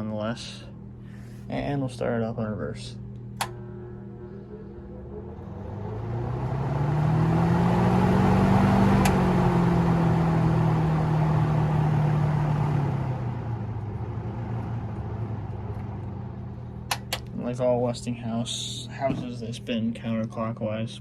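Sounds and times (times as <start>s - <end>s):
box fan motor hum: 0.0s - 21.0s
sharp click: 16.9s - 17.3s.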